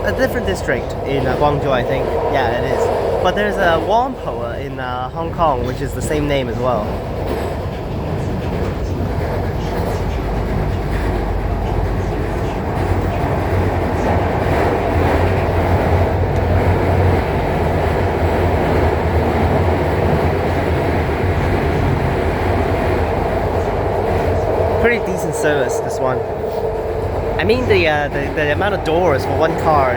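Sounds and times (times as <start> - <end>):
train cabin rumble and hum: 0.0 - 29.9.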